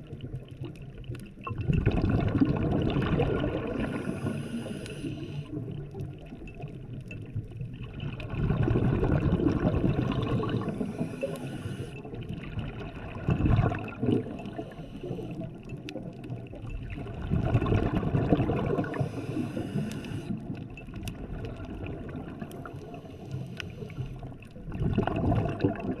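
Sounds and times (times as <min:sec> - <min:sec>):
exhaled bubbles gurgling: 0:00.0 - 0:26.0
diver breathing through regulator: 0:03.6 - 0:05.6, 0:10.3 - 0:12.2, 0:14.4 - 0:15.6, 0:18.8 - 0:20.5, 0:22.6 - 0:24.4.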